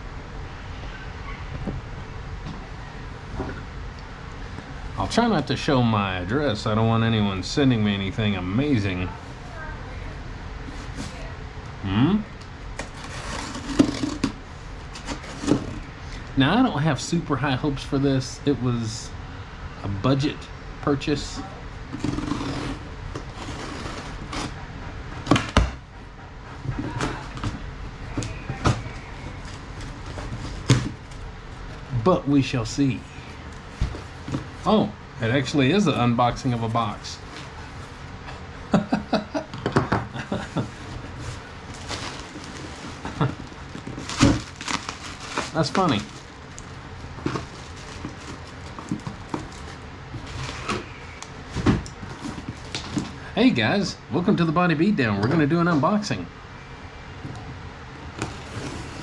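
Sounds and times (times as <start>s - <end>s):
cardboard box rustling and scraping: 10.6s - 11.3s, 12.8s - 15.9s, 21.9s - 24.6s, 26.6s - 31.8s, 33.2s - 38.2s, 40.3s - 53.2s, 58.1s - 59.0s.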